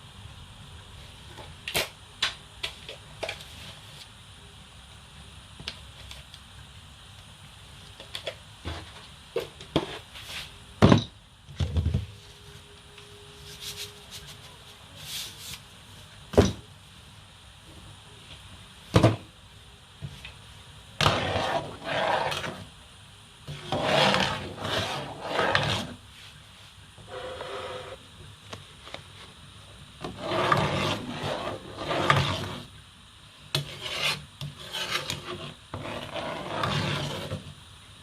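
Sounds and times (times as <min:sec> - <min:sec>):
utensil scraping a pot: 0:23.5 - 0:26.0, 0:27.1 - 0:28.0, 0:30.0 - 0:32.7, 0:33.6 - 0:37.5.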